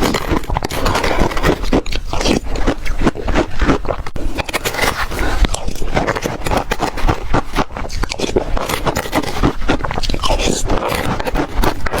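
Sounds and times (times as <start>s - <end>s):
crunching frozen ice cake: 0.0s - 12.0s.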